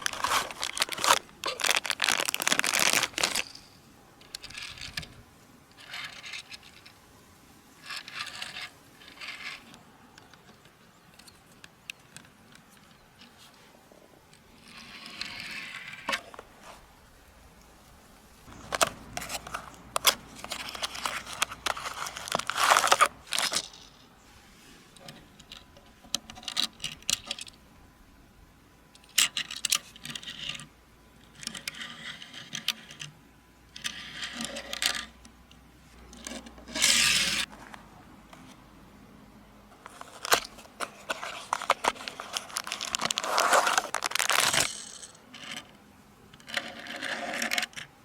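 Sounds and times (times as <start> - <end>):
packaging crinkling and tearing: 0.0 - 3.6, 18.5 - 23.7, 39.8 - 44.8.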